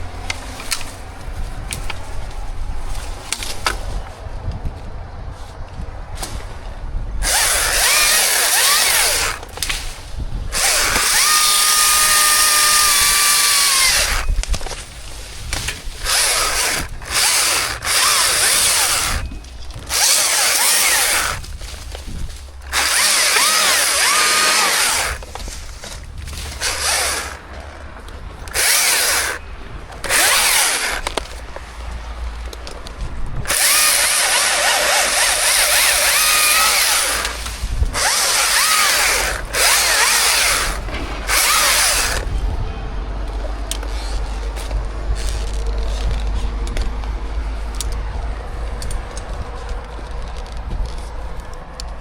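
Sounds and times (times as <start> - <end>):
chainsaw cutting wood: 7.2 - 9.9, 10.5 - 14.4, 15.5 - 27.6, 28.4 - 29.4, 30.0 - 31.5, 33.5 - 42.4.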